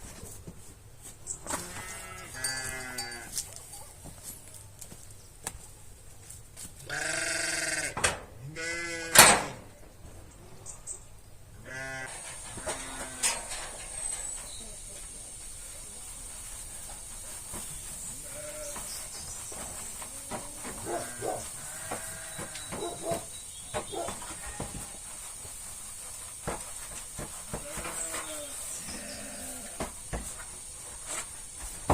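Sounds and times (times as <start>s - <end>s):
sheep bleating: 6.9s - 9.2s, 11.6s - 12.1s
steady high hiss: 12.0s - 22.7s.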